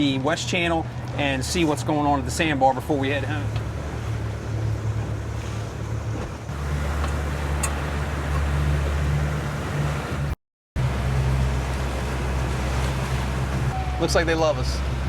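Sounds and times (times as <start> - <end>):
motorboat engine droning: 0.0 - 15.0
rushing wind and water spray: 3.1 - 15.0.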